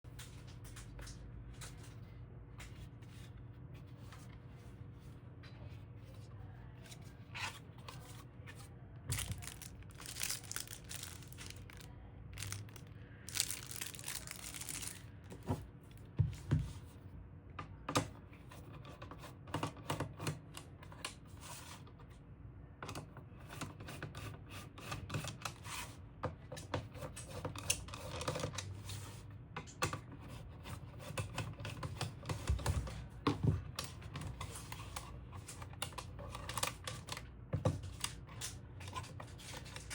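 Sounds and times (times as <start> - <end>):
clicks and knocks of small parts: 9.1 - 15.5
packaging rustling and crinkling: 9.1 - 16.0.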